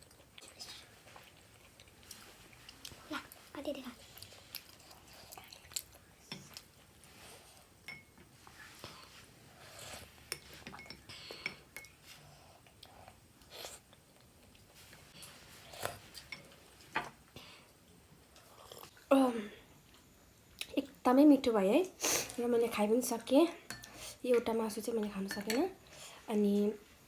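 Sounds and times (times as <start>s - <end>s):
cutlery clinking on dishes: 10.3s - 11.9s.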